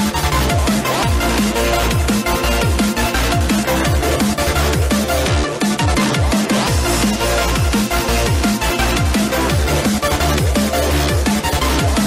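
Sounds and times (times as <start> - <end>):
drum and bass music: 0.0 - 12.0.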